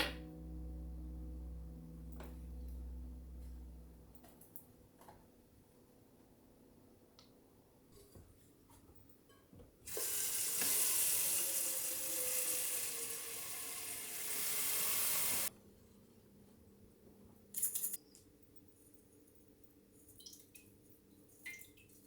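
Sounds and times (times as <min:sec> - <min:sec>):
water running from a tap: 0:09.9 - 0:15.5.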